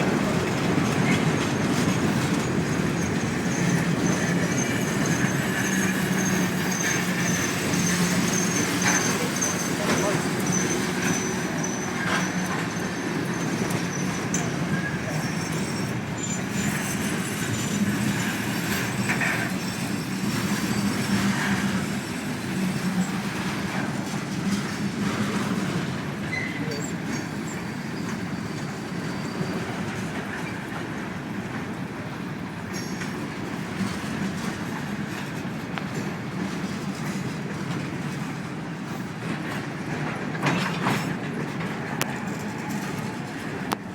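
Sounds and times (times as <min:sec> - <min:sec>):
train wheels rumbling on track: 0:00.0 - 0:43.9
high wheel squeals: 0:00.3 - 0:24.0, 0:24.6 - 0:30.7, 0:32.7 - 0:35.3.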